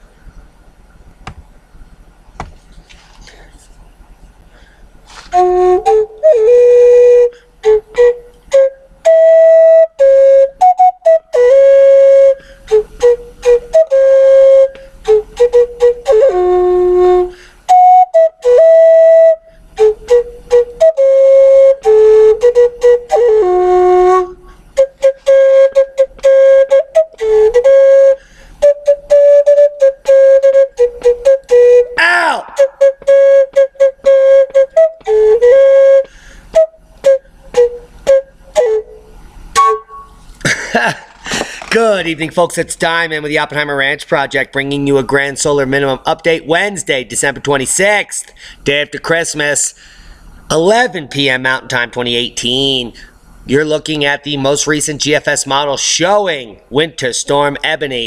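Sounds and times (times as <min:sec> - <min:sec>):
flute-like melody: 0:05.2 - 0:40.3.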